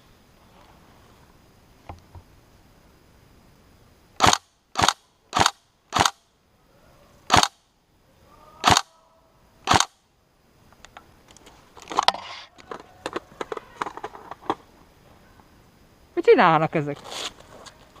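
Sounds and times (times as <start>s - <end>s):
rustling: 0.0s - 2.3s, 10.7s - 15.5s, 16.8s - 18.0s
airsoft rifle shots: 4.2s - 6.2s, 7.3s - 7.6s, 8.6s - 8.9s, 9.6s - 10.0s.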